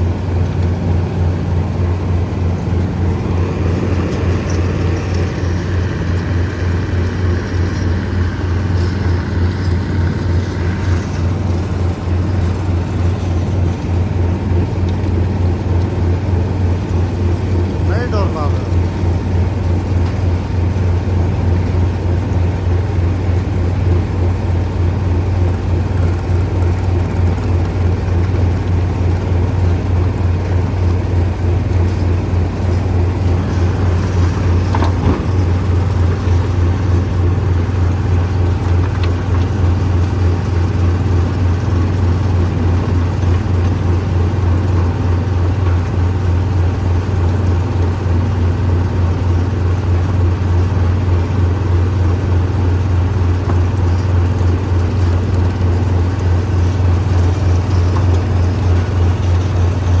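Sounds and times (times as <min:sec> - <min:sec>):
stone crusher pulsing hum: 0:00.0 - 0:47.9.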